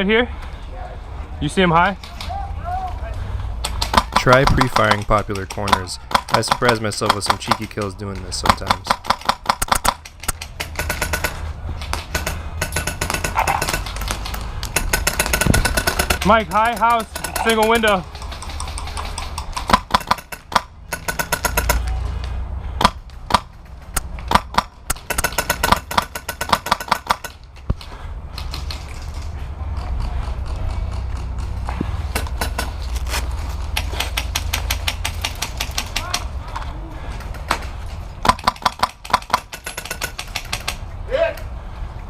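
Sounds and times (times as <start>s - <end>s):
airsoft rifle shots: 3.6s - 21.9s, 24.2s - 27.4s, 38.2s - 40.8s.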